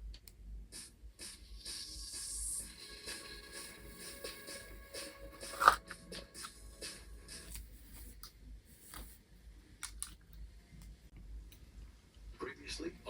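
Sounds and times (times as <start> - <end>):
faint background music: 0.0 - 13.0.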